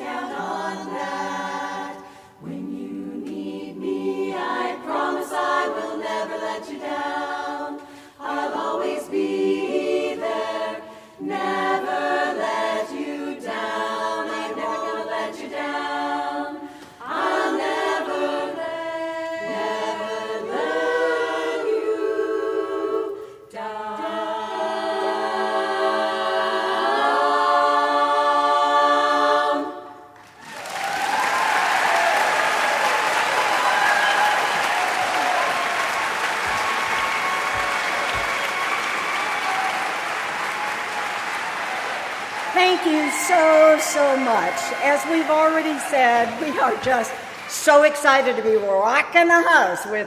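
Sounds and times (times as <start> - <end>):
women's chorus singing a cappella: 0.0 - 30.4, 31.1 - 50.0
audience applause: 30.2 - 48.2.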